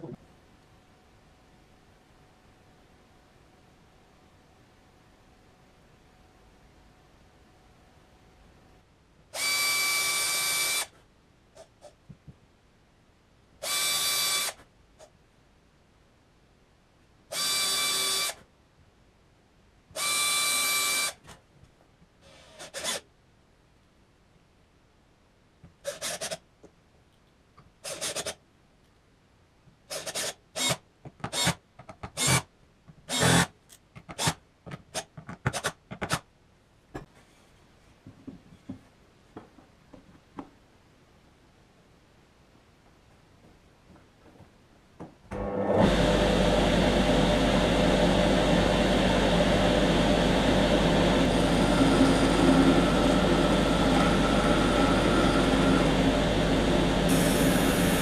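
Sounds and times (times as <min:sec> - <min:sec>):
power tool motor whining: 0:33.1 - 0:33.4, 0:45.3 - 0:58.0.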